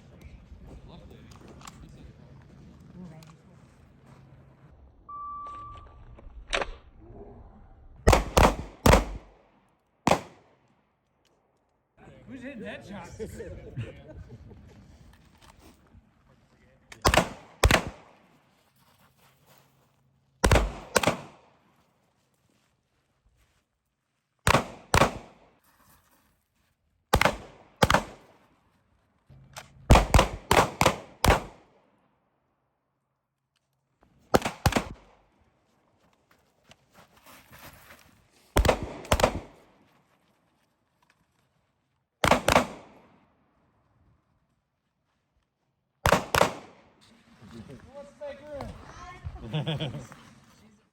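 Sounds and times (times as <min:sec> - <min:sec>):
shot timer beep: 0:05.1 - 0:06.2
pistol shots ringing: 0:08.1 - 0:09.3, 0:20.4 - 0:21.4, 0:42.2 - 0:43.0, 0:46.1 - 0:46.8
pistol shots: 0:08.1 - 0:09.4, 0:10.0 - 0:10.6, 0:17.0 - 0:18.2, 0:20.4 - 0:21.5, 0:24.4 - 0:25.5, 0:27.1 - 0:28.3, 0:29.9 - 0:31.7, 0:34.3 - 0:35.2, 0:38.6 - 0:39.7, 0:42.2 - 0:43.2, 0:46.0 - 0:46.9.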